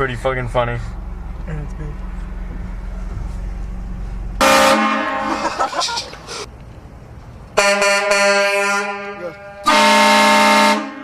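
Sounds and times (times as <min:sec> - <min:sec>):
vehicle low rumble: 0:00.0 - 0:09.7
air horn blast: 0:04.4 - 0:05.5, 0:07.6 - 0:11.0.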